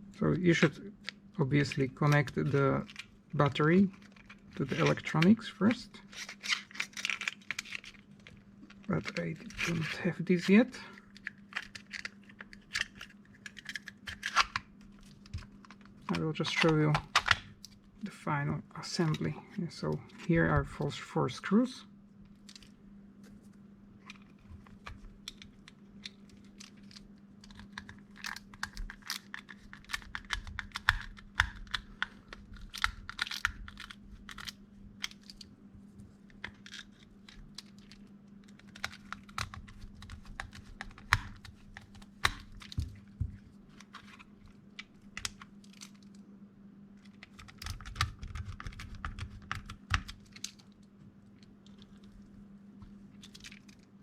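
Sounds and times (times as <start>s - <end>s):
faint low hum: 0.0s - 54.0s.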